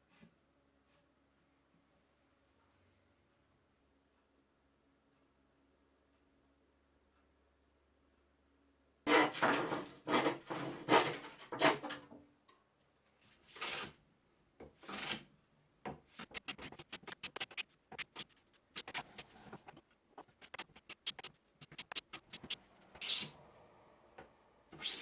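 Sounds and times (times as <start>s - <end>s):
hand tool strokes on wood: 16.2s - 23.3s.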